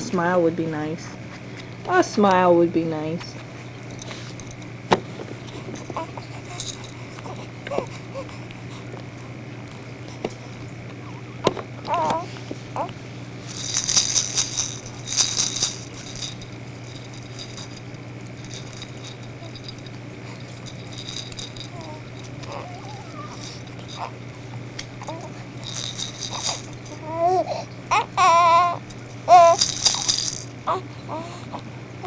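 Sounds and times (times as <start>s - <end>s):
toy rattle shaken: 3.8s - 4.7s, 5.4s - 8.3s, 13.4s - 24.2s, 24.8s - 30.7s.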